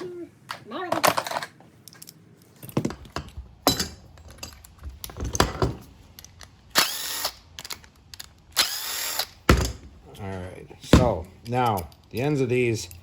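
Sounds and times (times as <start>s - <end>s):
metal parts clanking: 0.9s - 13.0s
power drill running: 6.7s - 7.4s, 8.6s - 9.4s.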